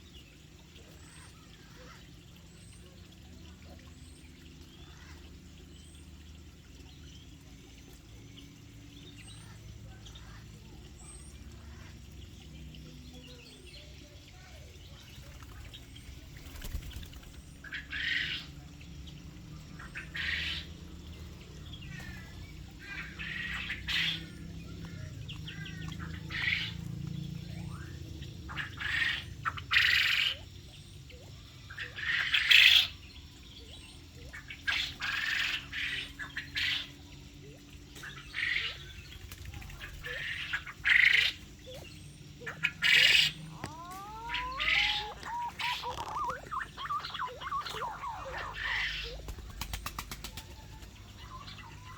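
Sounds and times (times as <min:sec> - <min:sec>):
birds squawking: 0:14.0 - 0:51.9
quick bird chirps: 0:39.8 - 0:51.9.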